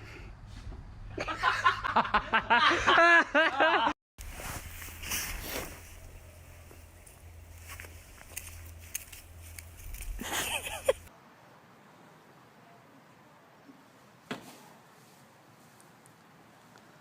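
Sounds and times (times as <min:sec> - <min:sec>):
outdoor background noise: 0:00.0 - 0:17.0
person laughing hard: 0:01.2 - 0:04.0, 0:10.2 - 0:11.1.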